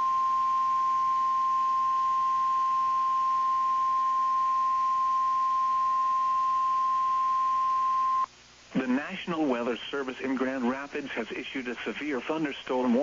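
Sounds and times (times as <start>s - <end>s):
steady high alarm tone: 0.0s - 8.3s.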